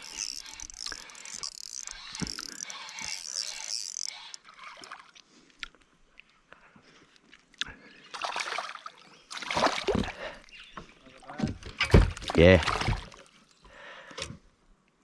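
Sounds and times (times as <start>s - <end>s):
water splashing at a kayak: 0.0s - 5.3s, 8.1s - 13.4s.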